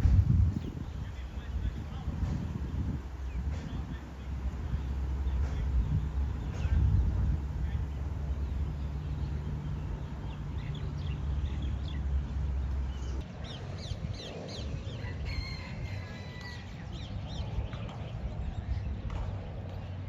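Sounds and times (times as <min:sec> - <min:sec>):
low rumble: 0:00.0 - 0:20.0
birds chirping: 0:00.5 - 0:20.0.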